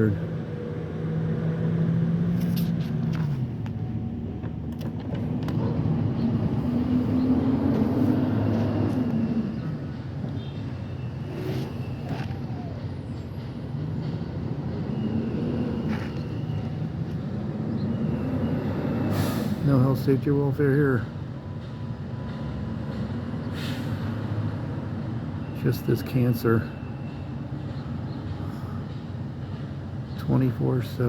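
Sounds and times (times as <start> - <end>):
diesel engine revving: 0.0 - 3.5, 4.8 - 10.3.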